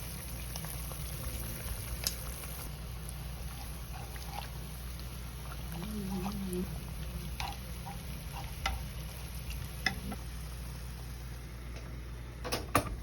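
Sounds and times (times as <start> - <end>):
steady low hum: 0.0 - 13.0
spatula stirring food in pan: 3.1 - 10.4.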